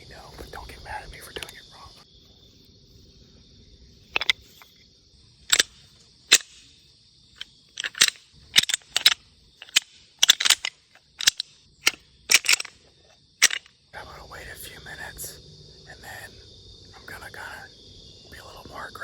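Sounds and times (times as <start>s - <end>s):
crickets chirping: 0.0s - 19.0s
rattle bag clacking: 5.5s - 6.7s, 7.4s - 12.8s, 13.4s - 13.7s.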